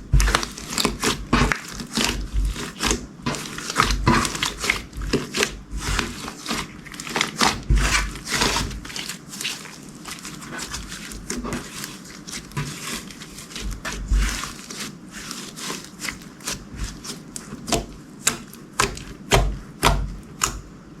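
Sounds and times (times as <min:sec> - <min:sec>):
slime squished by hand: 0:00.0 - 0:20.7.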